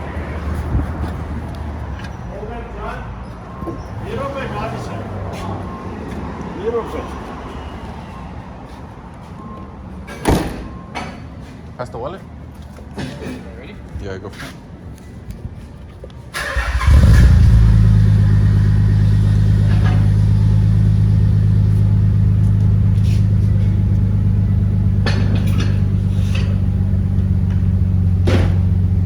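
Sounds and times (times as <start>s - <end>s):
car engine cranking and idling: 16.3s - 29.0s.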